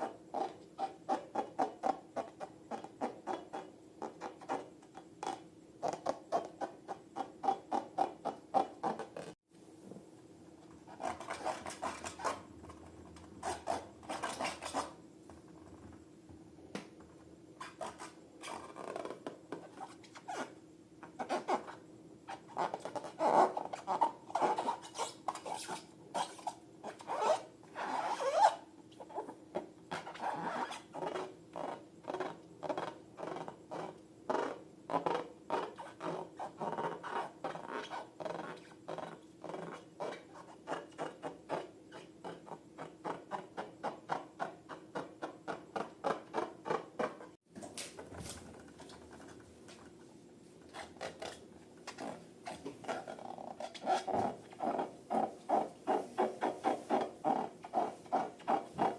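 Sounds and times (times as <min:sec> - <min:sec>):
squelching slime rubbing: 0:46.1 - 0:58.9.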